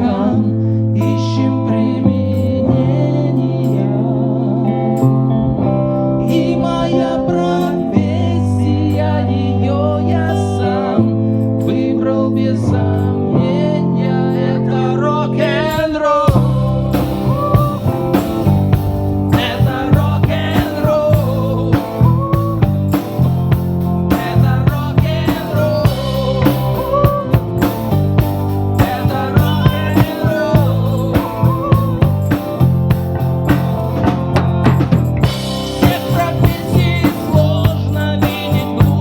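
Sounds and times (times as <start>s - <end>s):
person singing: 0.0s - 5.2s, 6.2s - 23.4s, 24.0s - 32.8s, 35.2s - 39.0s
rock guitars: 0.0s - 39.0s
drum kit beat: 16.3s - 39.0s.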